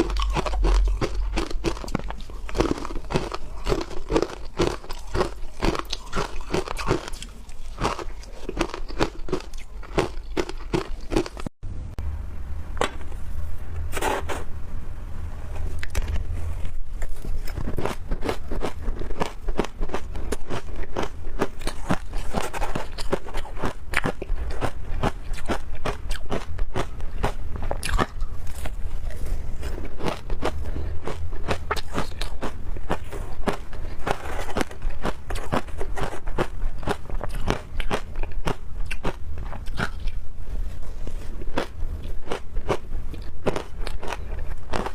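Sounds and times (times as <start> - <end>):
low hum: 0.0 - 3.6, 11.0 - 19.0
ice crunching being chewed: 0.0 - 11.5, 15.8 - 40.2, 40.9 - 44.9.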